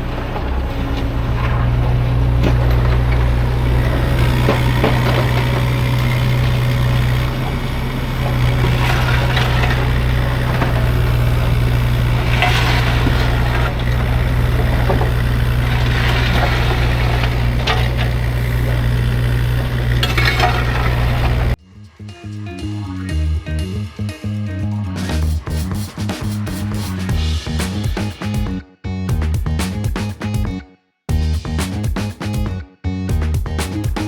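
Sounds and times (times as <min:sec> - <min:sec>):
bucket scraping and clanking in dirt: 0:00.0 - 0:21.6
mini excavator running: 0:00.0 - 0:21.6.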